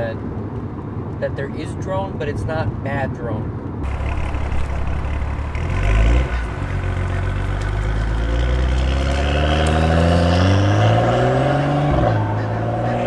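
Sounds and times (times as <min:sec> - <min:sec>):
car engine accelerating: 0:03.8 - 0:13.0.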